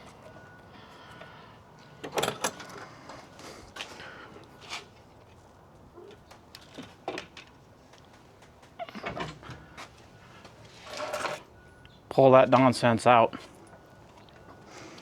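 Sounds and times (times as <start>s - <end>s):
latch rattling: 2.0s - 2.8s.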